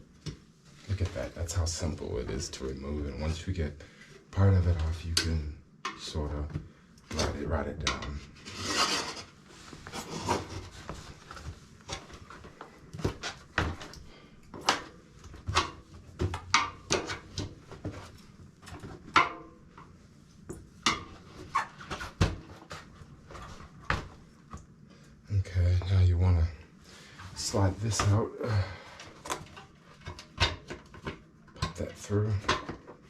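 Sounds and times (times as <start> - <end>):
rubber scraping on rim: 8.3 - 9.3.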